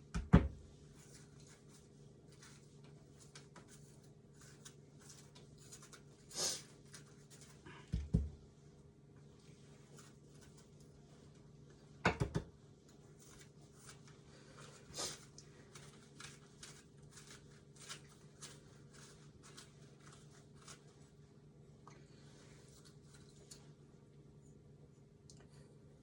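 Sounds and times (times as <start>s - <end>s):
knife scraping seeds: 13.3s - 20.8s.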